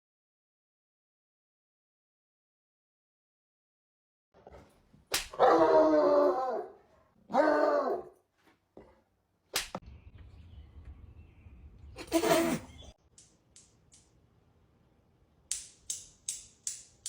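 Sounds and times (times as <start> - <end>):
animal drawn-out calls: 12.0 - 12.9
sharp click: 15.5 - 17.0.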